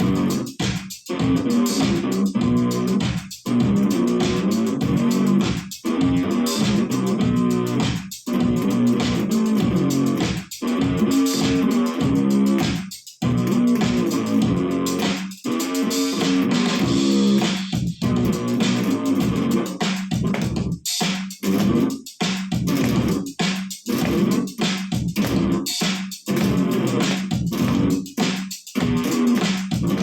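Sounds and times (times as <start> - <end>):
electric bass riff: 0.0 - 0.5, 1.2 - 12.6, 13.2 - 15.1, 18.0 - 20.5, 21.5 - 21.9, 26.3 - 28.1.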